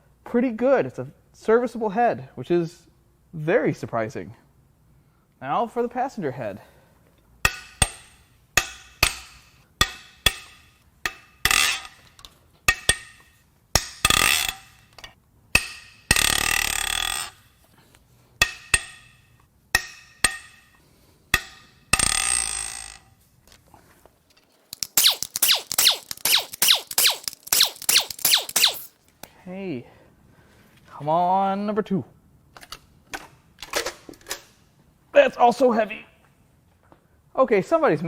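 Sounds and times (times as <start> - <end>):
rattling clicks: 24.4 - 28.9
tool noise bursts: 24.7 - 29.0.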